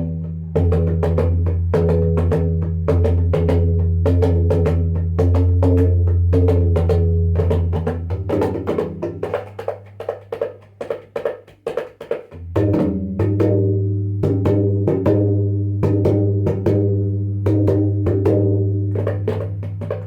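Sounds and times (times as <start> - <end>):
bass hand drum strokes: 0.0 - 9.6, 12.4 - 20.0
deep ringing drum bass tone: 12.4 - 19.7.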